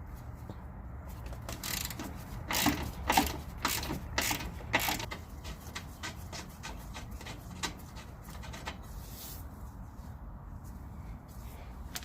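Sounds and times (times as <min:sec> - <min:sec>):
hand ratchet clicking: 0:01.5 - 0:08.8.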